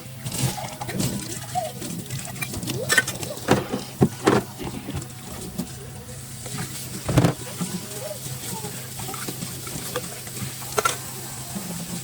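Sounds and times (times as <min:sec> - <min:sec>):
dishes and utensils clinking: 0:02.2 - 0:05.7, 0:06.5 - 0:07.8.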